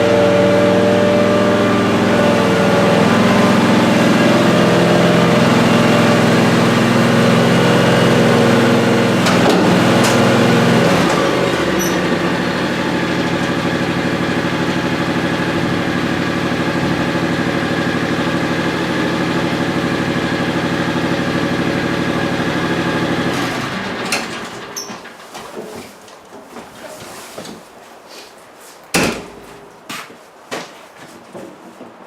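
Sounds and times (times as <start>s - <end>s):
tractor engine idling: 0.0s - 24.9s.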